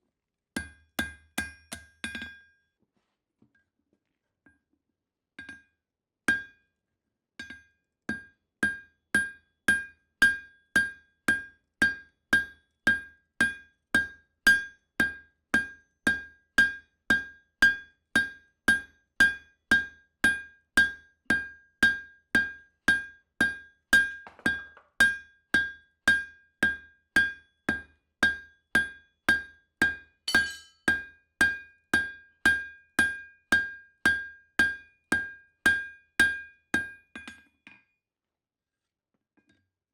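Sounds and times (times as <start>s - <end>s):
hammer striking steel on anvil: 30.3s - 30.9s.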